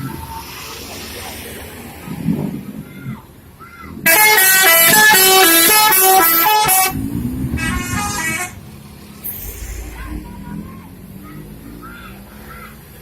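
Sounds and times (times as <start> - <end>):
bus musical air horn tune: 4.0 - 7.0, 7.6 - 8.6.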